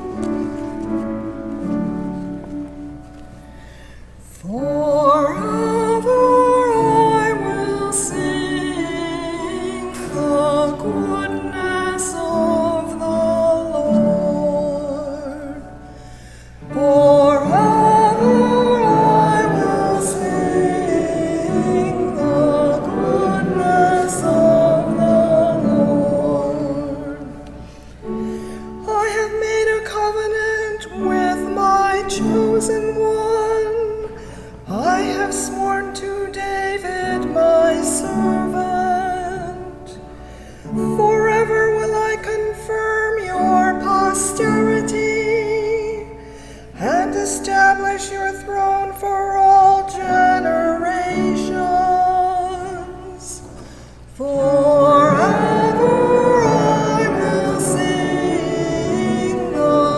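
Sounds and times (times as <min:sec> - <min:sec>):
solo singer: 0:04.2 - 0:59.9
sustained instrumental chords: 0:17.0 - 0:28.8, 0:54.4 - 0:59.9.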